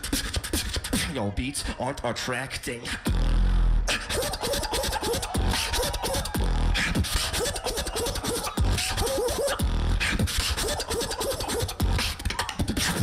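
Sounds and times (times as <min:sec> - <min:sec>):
beatboxing bass kicks: 0:00.0 - 0:01.2, 0:02.8 - 0:13.0
vocal sound effects: 0:03.8 - 0:13.0.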